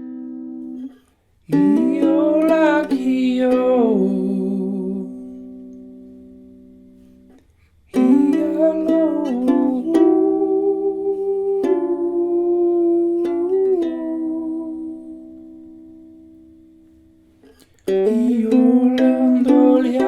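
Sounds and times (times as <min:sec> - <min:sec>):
ukulele chords strummed: 0:00.0 - 0:20.0
ukulele notes ringing: 0:08.0 - 0:16.7, 0:17.9 - 0:20.0.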